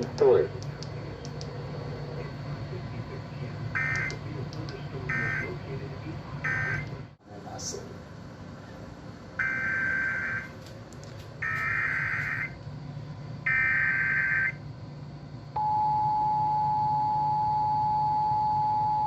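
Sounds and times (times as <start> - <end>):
steady single-pitch attention tone: 15.6 - 19.0.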